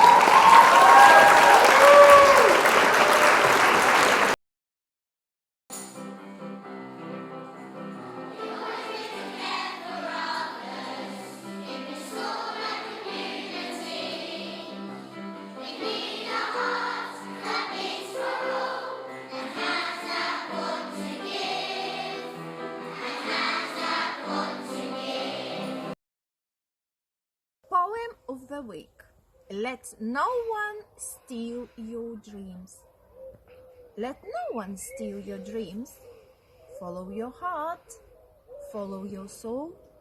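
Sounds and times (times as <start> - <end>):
choir singing with music: 5.9 - 26.0.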